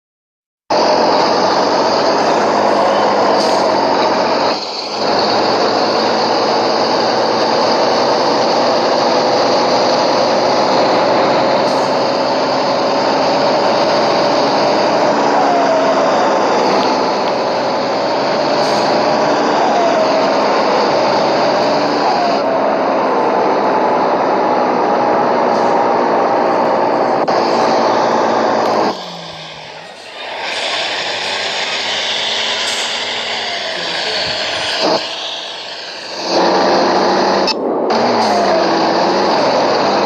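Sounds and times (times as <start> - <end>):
motor running loudly: 25.2 - 40.0.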